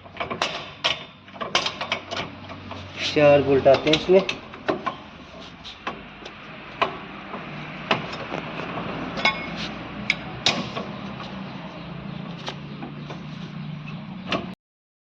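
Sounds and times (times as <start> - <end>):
metal tools clinking on hub: 0.0 - 8.4, 9.1 - 11.9.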